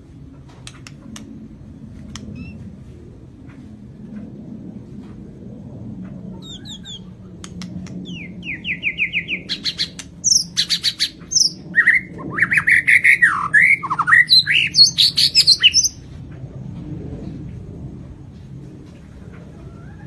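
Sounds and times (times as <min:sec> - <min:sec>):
bird singing varied song: 0:08.0 - 0:16.1.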